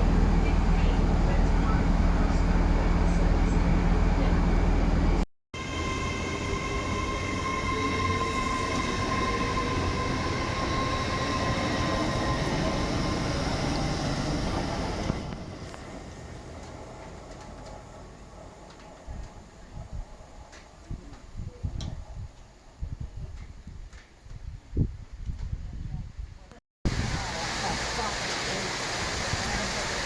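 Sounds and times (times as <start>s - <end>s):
train high whine: 0.0s - 21.5s
train rumbling past: 0.0s - 22.9s.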